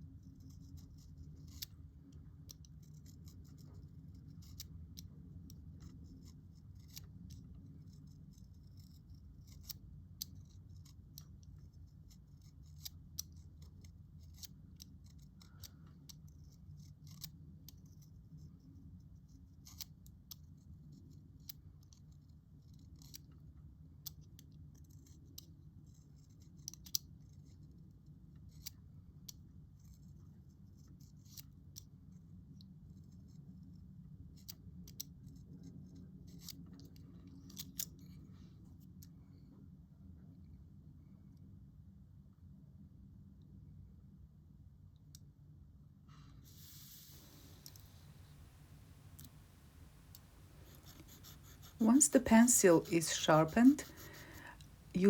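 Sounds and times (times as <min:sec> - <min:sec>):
knife blade shaving pencil wood: 0:00.2 - 0:01.8, 0:02.5 - 0:18.1, 0:49.0 - 0:55.0
low steady hum: 0:32.2 - 0:55.0.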